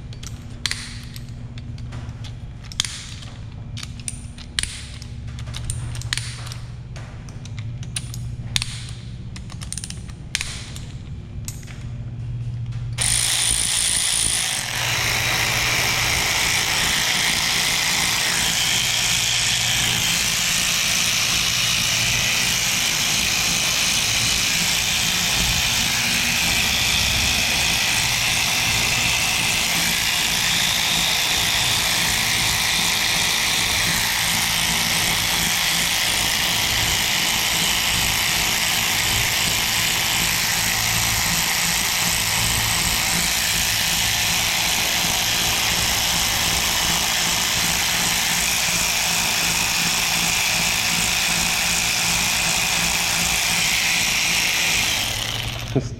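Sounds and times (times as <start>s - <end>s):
electric fan whooshing and humming: 0.0s - 55.9s.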